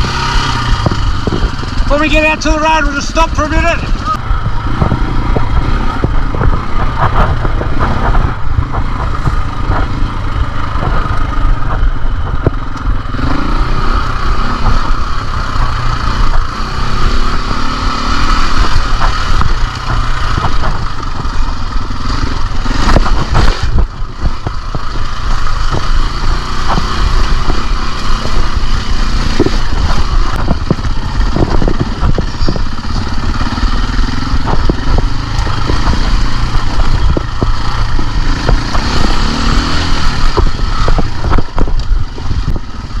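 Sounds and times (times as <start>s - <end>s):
dirt bike engine revving: 0.0s - 43.0s
bike clattering over rough ground: 18.2s - 43.0s.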